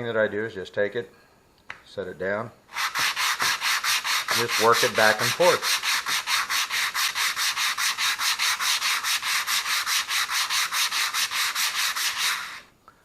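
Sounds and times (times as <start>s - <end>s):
sandpaper rubbed back and forth: 2.7s - 12.7s.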